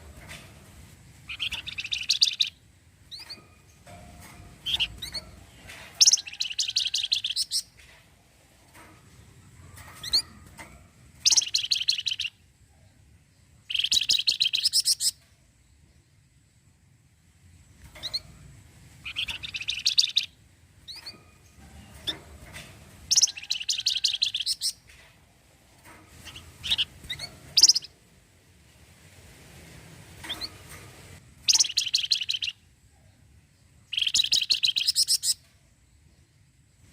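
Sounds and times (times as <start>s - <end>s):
songbird rattling trills: 1.1s - 7.9s, 9.8s - 12.4s, 13.6s - 15.2s, 17.9s - 24.9s, 26.1s - 28.0s, 30.2s - 30.8s, 31.4s - 32.6s, 33.9s - 35.5s.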